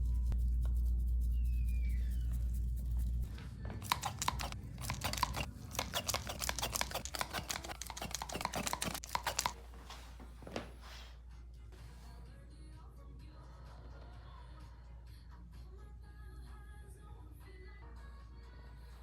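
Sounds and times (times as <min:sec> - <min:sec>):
joints cracking: 0:03.8 - 0:09.6.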